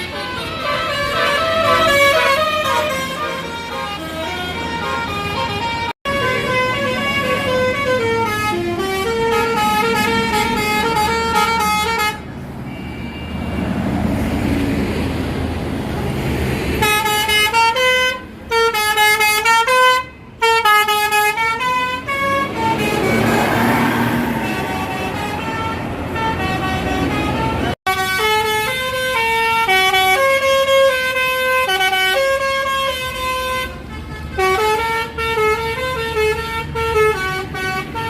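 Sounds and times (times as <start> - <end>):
short horn notes: 0.0 - 12.2
multi-tone bus horn melody: 0.0 - 13.9, 16.7 - 38.0
bus engine noise: 0.0 - 38.0.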